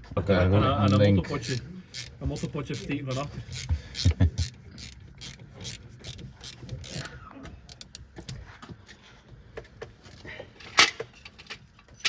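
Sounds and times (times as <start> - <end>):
ratchet wrench clicking: 0.8 - 7.1, 7.7 - 8.0.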